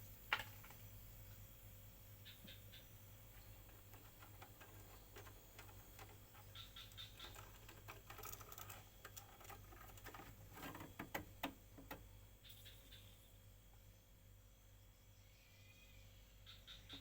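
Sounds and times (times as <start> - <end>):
faint clicks and light taps: 3.3 - 12.1.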